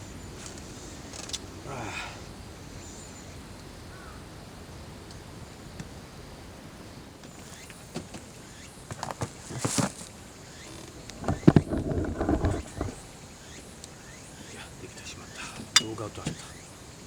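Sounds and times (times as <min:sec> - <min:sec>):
outdoor background noise: 0:00.0 - 0:17.0
short rustle: 0:09.1 - 0:13.2
light clicks and knocks: 0:10.8 - 0:13.1.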